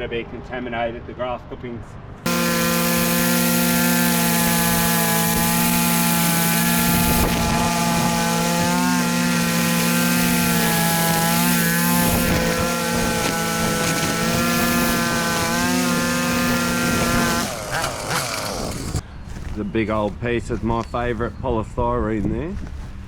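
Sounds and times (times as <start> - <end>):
string trimmer engine cutting grass: 2.3 - 19.6.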